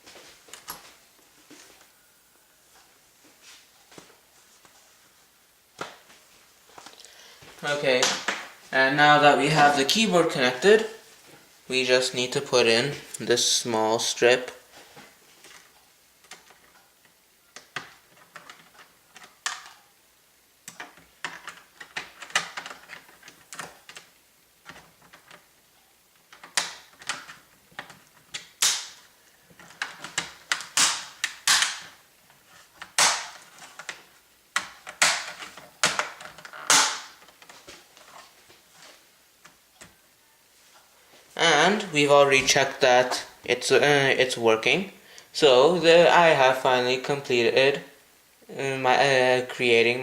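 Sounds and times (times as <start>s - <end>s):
plastic clicks and snaps: 26.2s - 32.0s.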